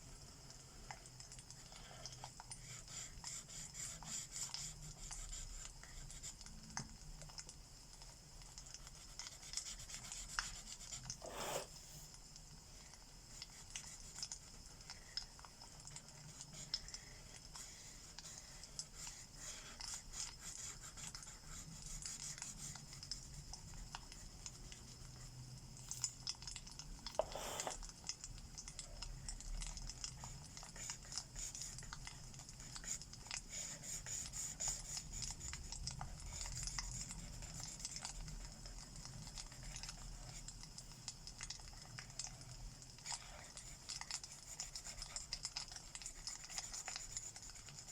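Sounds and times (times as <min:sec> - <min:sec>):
marker tips scratching paper: 0:09.6 - 0:12.0, 0:27.2 - 0:27.8.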